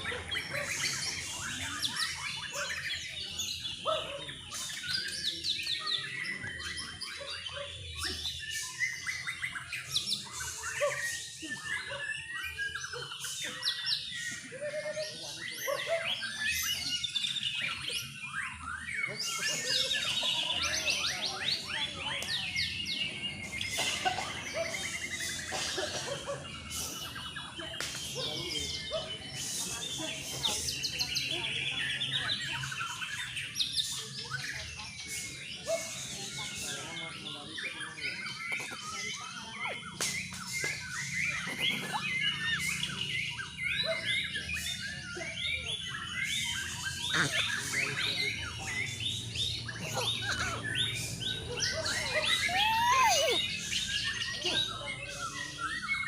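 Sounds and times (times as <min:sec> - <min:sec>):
birds singing whistled notes: 0:00.0 - 0:56.0
fast bird trill: 0:45.8 - 0:56.0.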